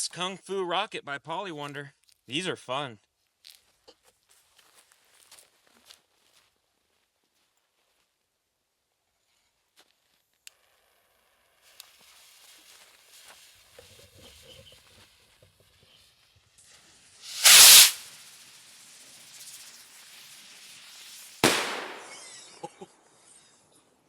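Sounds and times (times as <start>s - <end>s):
firework rocket launching whoosh: 17.0s - 22.6s
firework shell bang: 17.3s - 18.0s, 21.4s - 22.6s
small pops: 17.3s - 18.1s.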